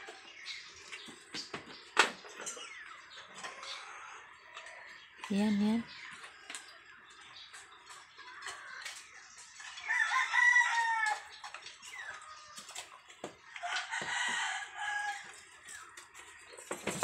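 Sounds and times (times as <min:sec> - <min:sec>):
rooster crowing: 0:09.9 - 0:11.3, 0:13.6 - 0:15.4.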